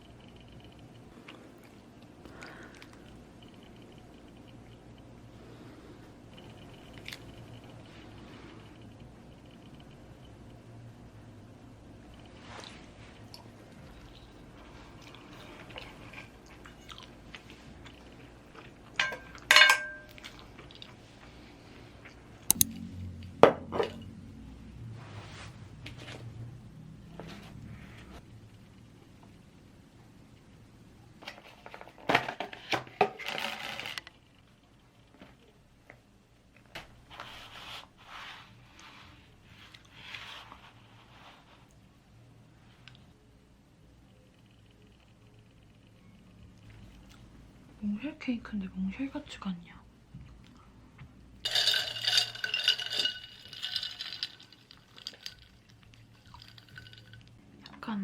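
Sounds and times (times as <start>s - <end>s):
utensil clinking on tableware: 19.0s - 20.3s, 51.5s - 57.3s
soft rustles: 37.0s - 41.9s.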